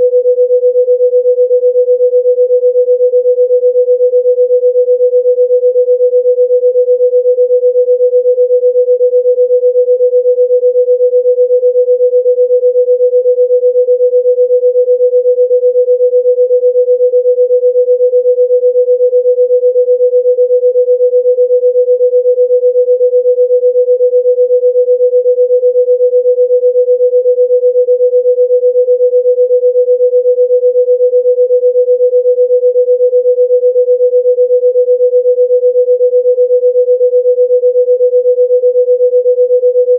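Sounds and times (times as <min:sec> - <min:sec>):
steady electronic pure tone: 0:00.0 - 0:02.4.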